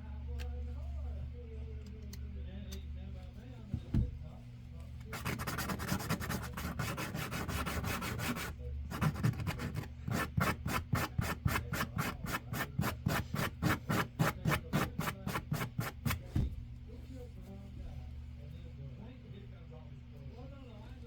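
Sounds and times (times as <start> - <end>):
sandpaper rubbing on wood: 5.1 - 16.2.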